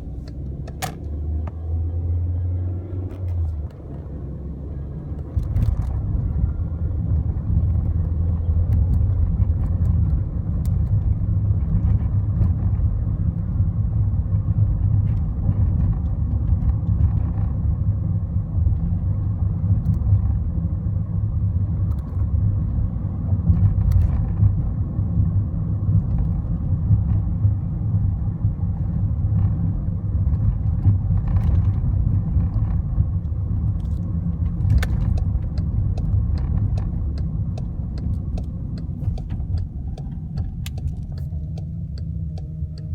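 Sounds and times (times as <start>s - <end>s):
car road rumble: 0.0s - 42.9s
light ticks: 32.5s - 42.9s.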